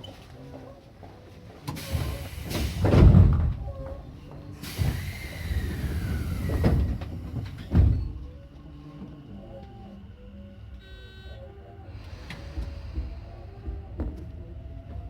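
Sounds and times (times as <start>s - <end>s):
train door hiss: 1.7s - 3.8s, 4.6s - 8.3s, 11.3s - 14.3s.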